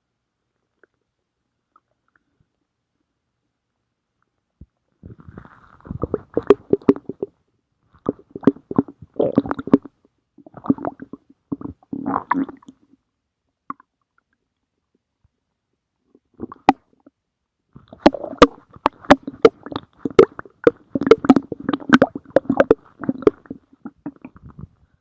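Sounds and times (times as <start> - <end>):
stomach growling and gurgling: 5.0 - 13.0, 16.0 - 25.0.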